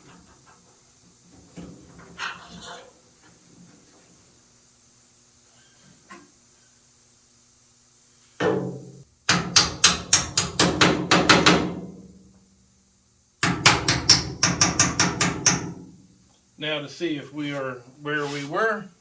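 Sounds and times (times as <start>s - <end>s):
hammer tapping on metal: 8.4s - 12.0s, 13.4s - 15.9s.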